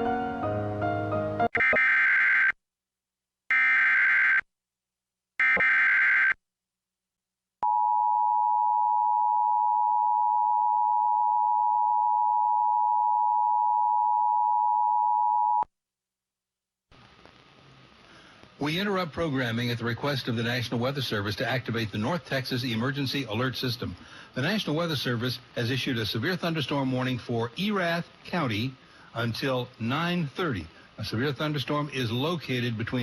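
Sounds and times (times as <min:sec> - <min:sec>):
screechy digital data bursts: 0:05.4 - 0:06.4.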